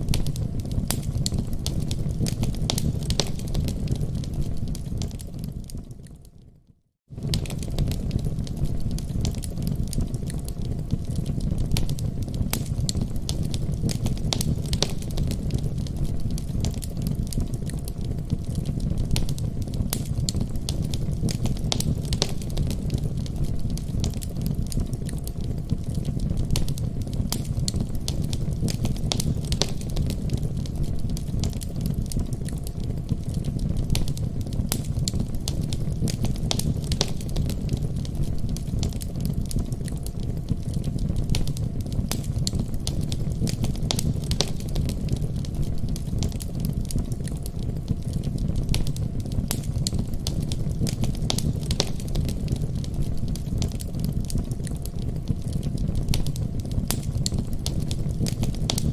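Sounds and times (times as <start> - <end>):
fire sharp pops: 0.0 - 6.2, 7.1 - 58.9
fire low rumble: 0.0 - 6.5, 7.1 - 58.9.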